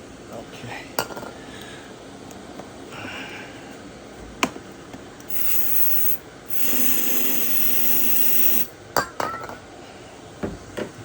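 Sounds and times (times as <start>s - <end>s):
aerosol spray hissing: 5.3s - 8.7s.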